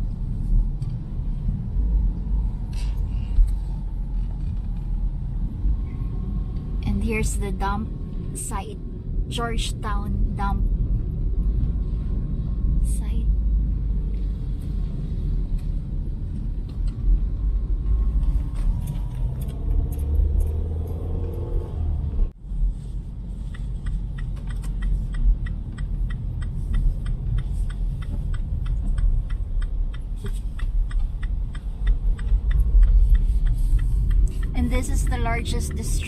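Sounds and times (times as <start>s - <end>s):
road and engine rumble in car: 0.0s - 36.0s
rapid even ticking: 23.4s - 36.0s.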